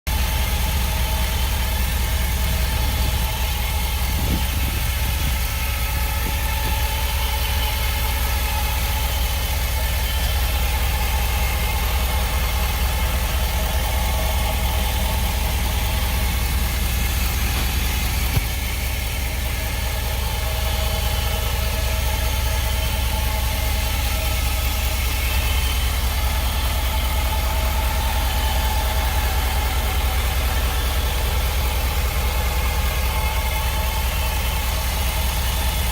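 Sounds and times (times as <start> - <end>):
engine whine: 0.1 - 35.9
truck engine idling: 0.1 - 35.9.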